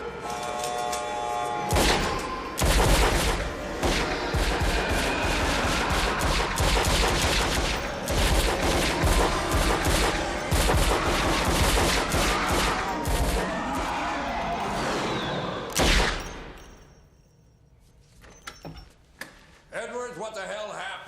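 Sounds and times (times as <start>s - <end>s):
guns firing barrage: 1.7s - 13.9s.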